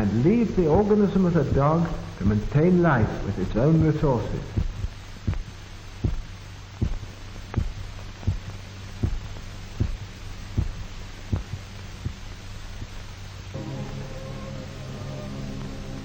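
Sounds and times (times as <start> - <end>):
steady low hum: 0.0 - 16.0
slow even thumps: 0.7 - 2.5, 3.5 - 13.0.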